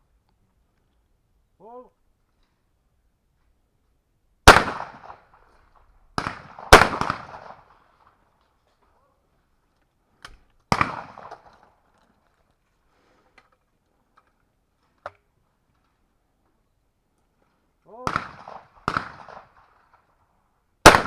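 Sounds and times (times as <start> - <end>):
loud close shotgun shots: 4.5 - 5.1, 6.2 - 7.6, 10.7 - 11.4, 18.0 - 19.5
distant shotgun shots: 4.5 - 5.2, 6.2 - 7.7, 10.7 - 11.5, 18.1 - 19.7.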